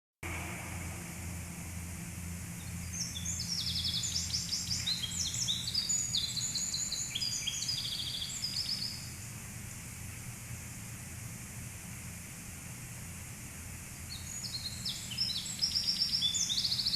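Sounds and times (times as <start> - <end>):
low engine hum: 0.2 - 8.0
songbird trilling: 2.6 - 9.2, 14.1 - 16.9.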